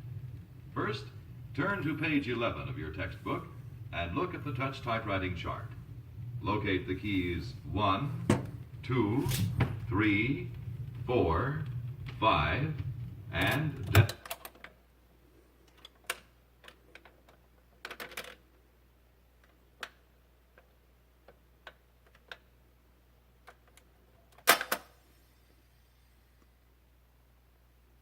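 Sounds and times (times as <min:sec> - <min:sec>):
vinyl record clicks and pops: 0:00.0 - 0:14.8
turntable low hum: 0:00.0 - 0:17.7.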